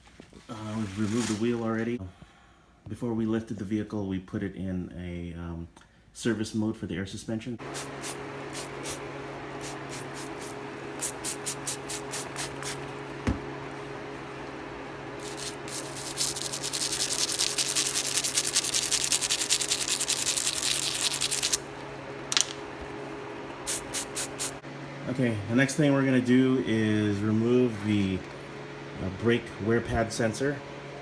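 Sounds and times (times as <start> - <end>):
constant low hum: 0.0 - 31.0
rhythmic rubbing strokes: 9.6 - 12.9, 15.2 - 21.6, 23.6 - 24.6.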